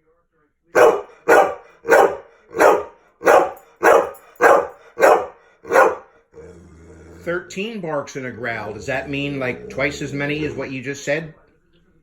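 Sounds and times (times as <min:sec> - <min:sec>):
dog barking: 0:00.8 - 0:06.1
dog growling: 0:00.8 - 0:11.0.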